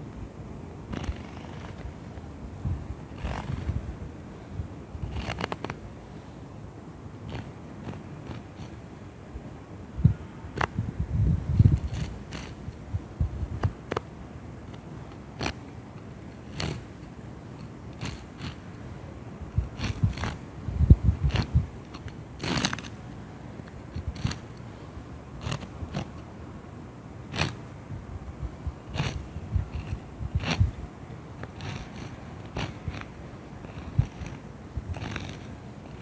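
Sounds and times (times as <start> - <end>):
cockroaches chewing: 11.6 - 12.8, 14.7 - 15.7, 16.4 - 18.8, 19.5 - 23.0, 23.6 - 24.7, 25.3 - 26.2, 27.3 - 27.7, 28.8 - 36.0.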